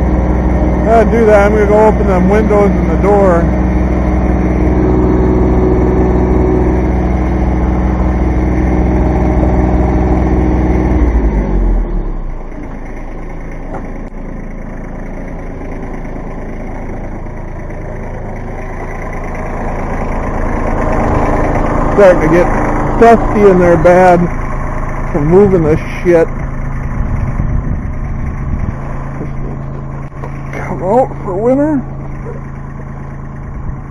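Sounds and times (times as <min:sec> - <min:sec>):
tractor diesel engine running: 0:00.0 - 0:33.9.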